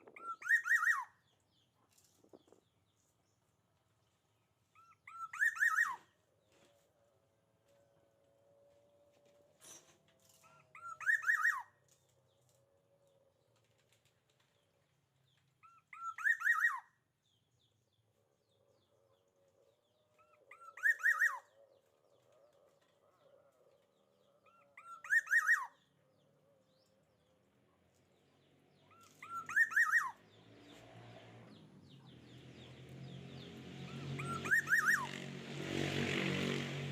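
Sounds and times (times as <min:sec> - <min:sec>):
bird calling harsh notes: 0:00.2 - 0:01.1, 0:04.8 - 0:06.1, 0:10.6 - 0:11.7, 0:20.5 - 0:21.5, 0:24.8 - 0:25.8, 0:28.9 - 0:30.2, 0:33.9 - 0:35.2.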